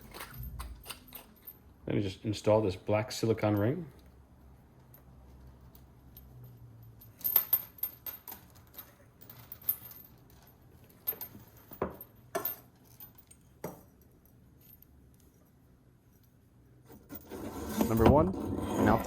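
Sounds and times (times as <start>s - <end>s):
small parts clicking and clinking: 0.0s - 1.7s, 4.8s - 17.3s.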